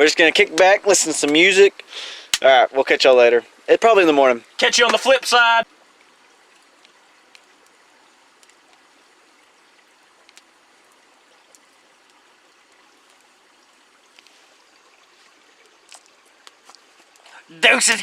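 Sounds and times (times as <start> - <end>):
faint steady hiss: 0.0 - 18.0
small clicks and crackles: 6.5 - 13.4, 14.0 - 14.6, 15.2 - 17.3.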